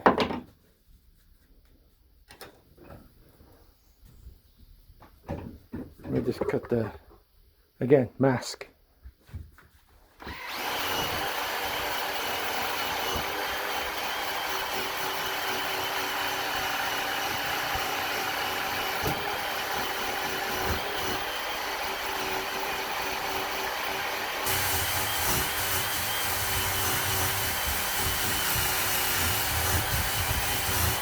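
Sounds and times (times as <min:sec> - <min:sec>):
small electric power tool running: 0:10.2 - 0:31.0.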